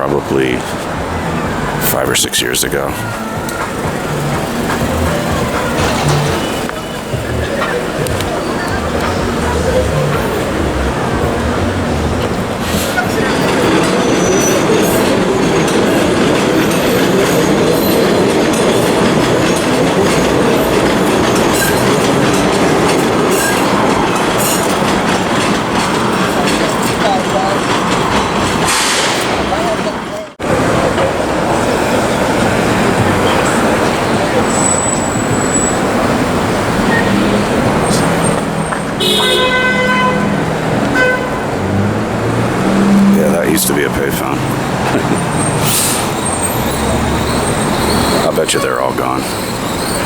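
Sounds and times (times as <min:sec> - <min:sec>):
street traffic: 0:00.0 - 0:50.0
train running on rails: 0:00.0 - 0:50.0
vehicle horn honking: 0:39.0 - 0:41.6.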